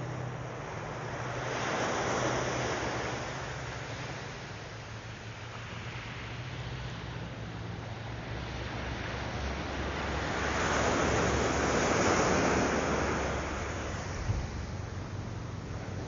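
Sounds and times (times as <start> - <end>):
wind rumble on microphone: 0.0 - 16.0
surf breaking on beach: 9.1 - 16.0.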